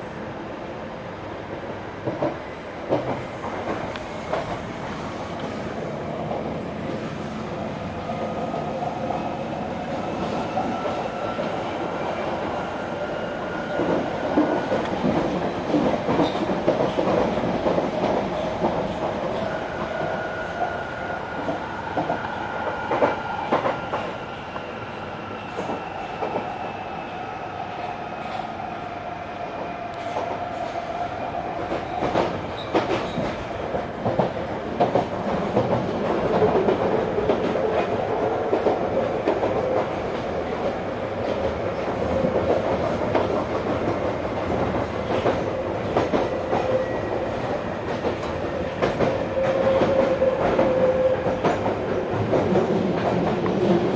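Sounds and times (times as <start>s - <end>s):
train running noise: 0.0s - 53.9s
train wheels clicking over rails: 2.0s - 6.5s, 13.5s - 24.2s, 31.6s - 53.9s.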